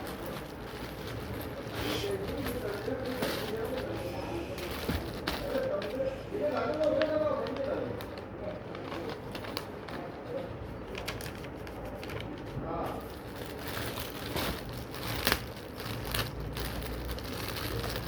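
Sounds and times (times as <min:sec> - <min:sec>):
packaging crinkling: 0:00.0 - 0:18.0.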